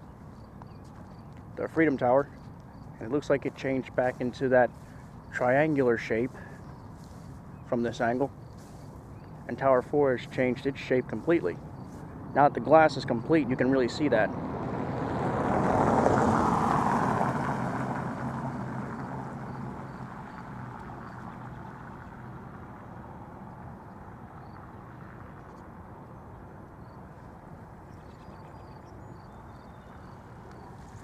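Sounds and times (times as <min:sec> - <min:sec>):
distant traffic hum: 0:00.0 - 0:31.0
vehicle passing by: 0:01.6 - 0:23.2.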